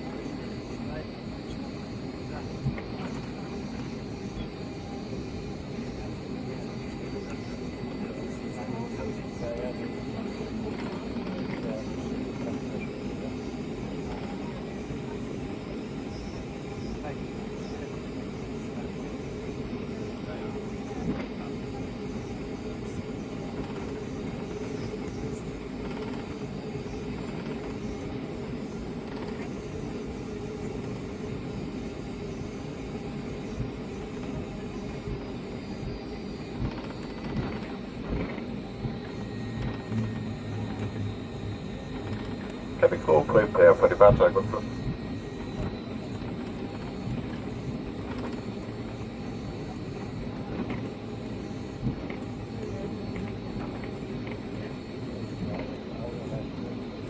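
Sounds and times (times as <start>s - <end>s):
aircraft cabin rumble: 0.0s - 57.0s
faint high whine: 0.0s - 57.0s
steady hum: 36.0s - 57.0s.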